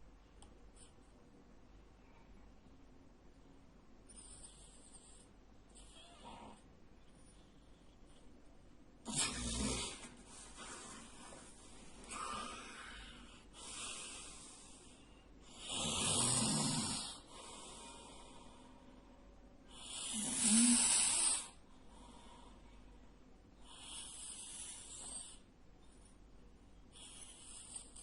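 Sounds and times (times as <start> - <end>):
man snoring loudly: 15.6 - 17.2, 19.8 - 21.5.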